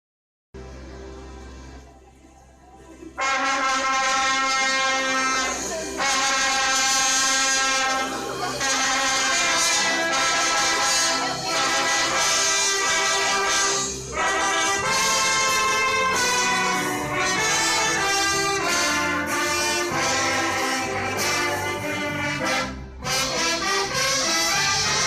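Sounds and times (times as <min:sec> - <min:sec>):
orchestra playing: 0:02.8 - 0:25.0.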